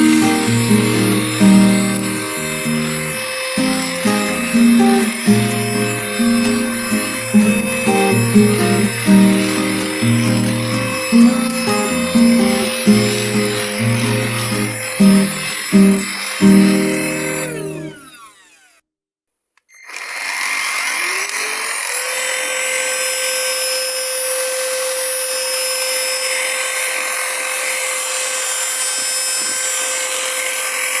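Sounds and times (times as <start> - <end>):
background music: 0.0 - 17.9
vacuum cleaner motor whine: 0.0 - 18.8, 19.7 - 31.0.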